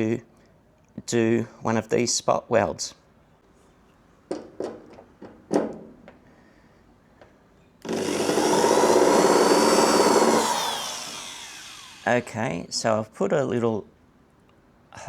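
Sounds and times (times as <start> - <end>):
light knocks: 4.3 - 6.2
electric drill drilling steel: 7.8 - 12.4.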